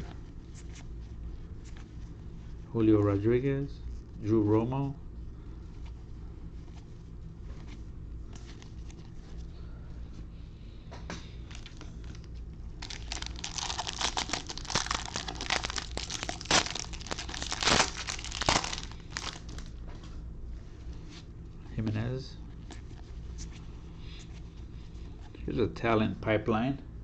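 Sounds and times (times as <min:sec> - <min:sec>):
plastic wrapper crinkling: 0:11.4 - 0:19.8.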